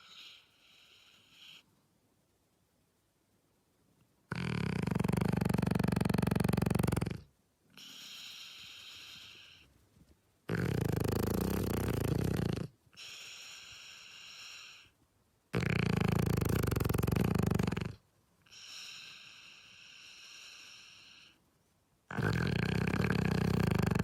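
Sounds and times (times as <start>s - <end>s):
dog snoring: 4.3s - 9.6s, 10.5s - 14.9s, 15.5s - 21.4s, 22.1s - 24.0s.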